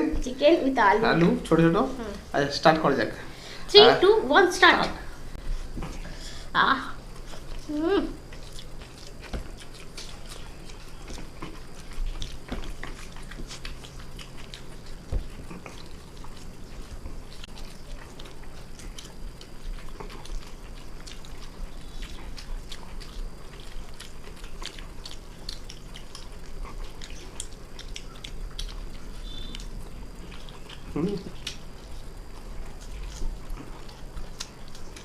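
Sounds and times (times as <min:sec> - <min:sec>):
people chewing food: 0:00.0 - 0:35.0.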